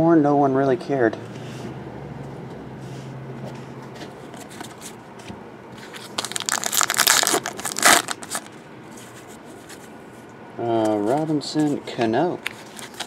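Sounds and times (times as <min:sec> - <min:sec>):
wrapper crinkling and tearing: 0:05.9 - 0:08.6, 0:12.6 - 0:13.0.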